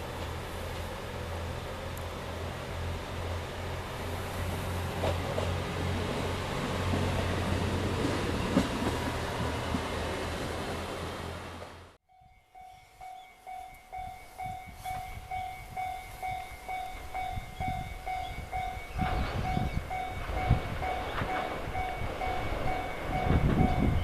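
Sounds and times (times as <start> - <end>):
diesel train rumble: 0.0 - 12.0, 12.6 - 24.0
level crossing alarm ringing: 12.1 - 24.0.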